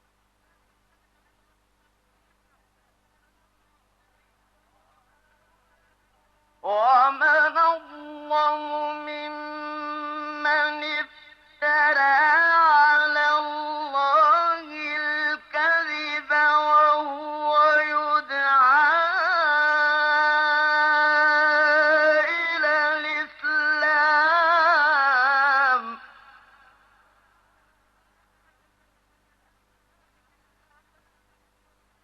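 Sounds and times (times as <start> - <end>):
man chanting melodically: 4.7 - 27.0.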